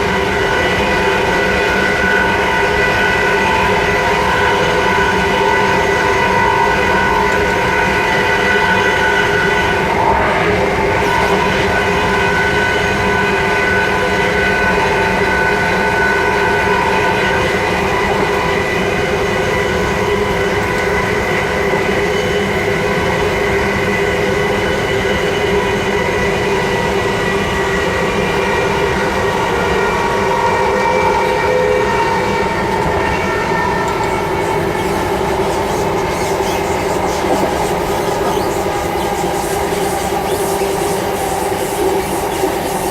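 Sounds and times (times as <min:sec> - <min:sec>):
train rail rumble: 0:00.0 - 0:42.9
steady whining tones: 0:31.9 - 0:42.9.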